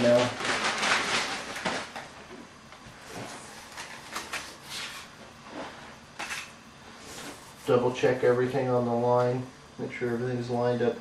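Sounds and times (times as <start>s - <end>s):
plastic bag rustling: 0.0s - 2.4s.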